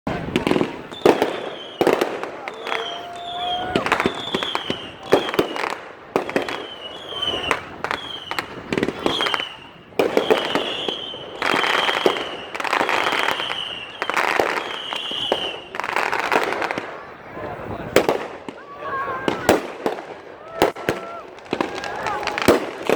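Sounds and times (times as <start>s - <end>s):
firecracker bangs and pops: 0.1s - 17.0s, 17.9s - 22.9s
falling firework whistles: 0.4s - 16.8s.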